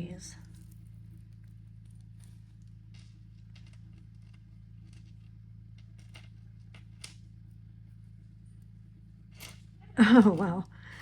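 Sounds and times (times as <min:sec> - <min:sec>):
low electrical hum: 0:00.0 - 0:11.0
jewellery clicking and rustling: 0:02.0 - 0:07.2, 0:09.3 - 0:09.7.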